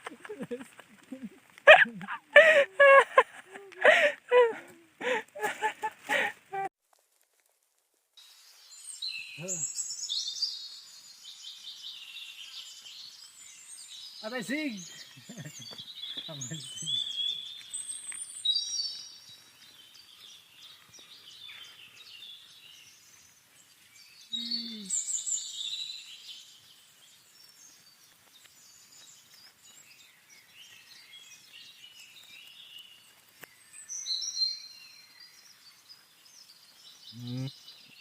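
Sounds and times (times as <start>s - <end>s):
faint outdoor hiss: 0.0s - 38.0s
birds singing and chirping: 8.3s - 38.0s.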